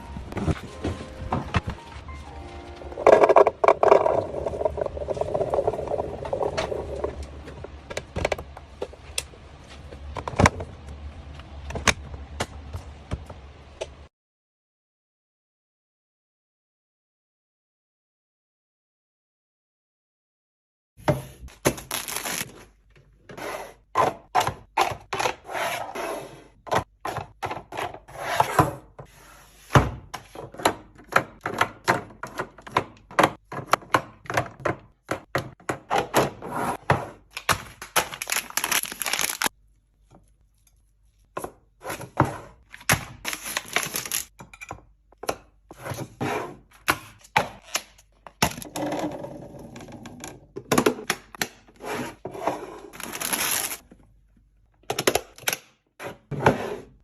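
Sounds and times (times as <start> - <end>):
plastic containers clattering: 2.9 - 8.5
packaging crinkling: 21.8 - 22.5, 37.8 - 39.5, 43.2 - 44.3, 53.0 - 53.8.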